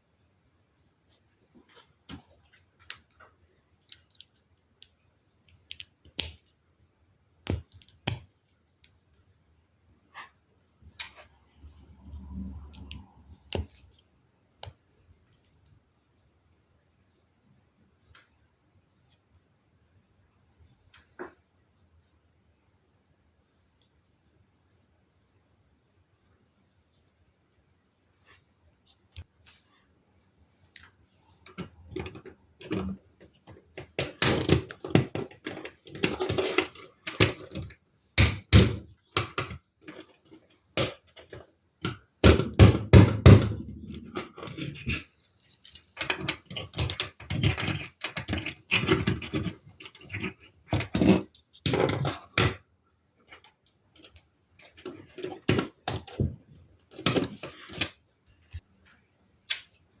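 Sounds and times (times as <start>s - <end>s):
plastic parts clattering and clicking: 38.6s - 52.6s.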